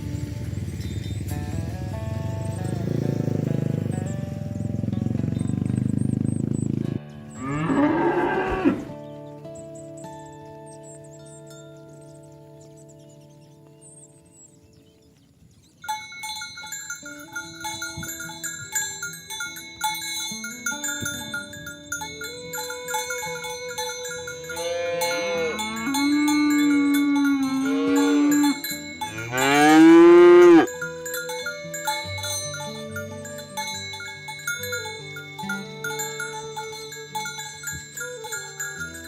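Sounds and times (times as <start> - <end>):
held bass notes: 0.0 - 10.0, 23.6 - 38.0
cowbells clanking: 0.0 - 13.6, 15.6 - 39.0
cattle mooing: 6.6 - 9.0, 24.5 - 30.7
glockenspiel melody: 7.0 - 14.2, 15.7 - 39.0.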